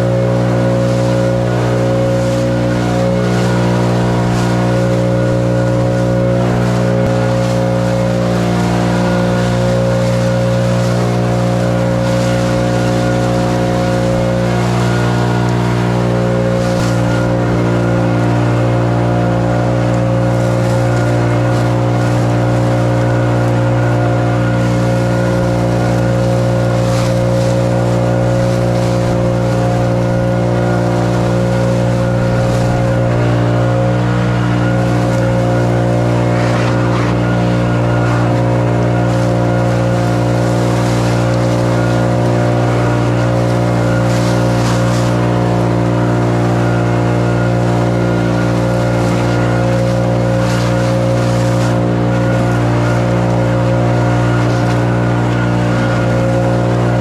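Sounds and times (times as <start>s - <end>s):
lawn equipment engine running: 0.0s - 57.0s.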